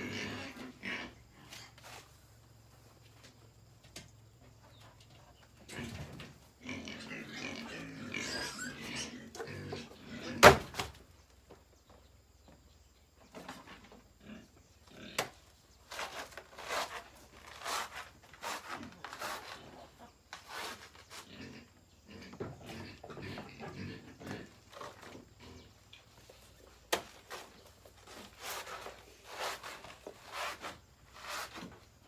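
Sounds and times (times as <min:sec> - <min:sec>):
pigs grunting and squealing: 0:00.0 - 0:01.6, 0:05.6 - 0:10.7, 0:13.6 - 0:15.4, 0:18.8 - 0:26.0.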